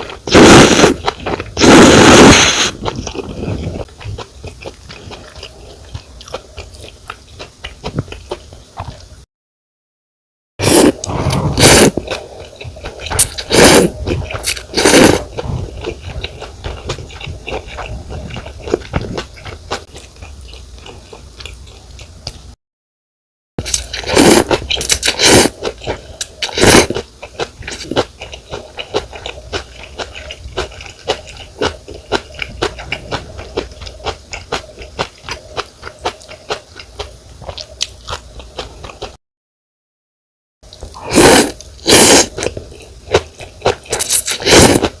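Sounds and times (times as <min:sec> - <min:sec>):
slurping noodles and broth: 0:00.0 - 0:04.2, 0:10.6 - 0:19.9, 0:23.6 - 0:27.0, 0:40.9 - 0:45.0
wet chewing and mouth clicks: 0:00.0 - 0:09.1, 0:10.8 - 0:22.4, 0:23.6 - 0:39.2, 0:40.7 - 0:45.0.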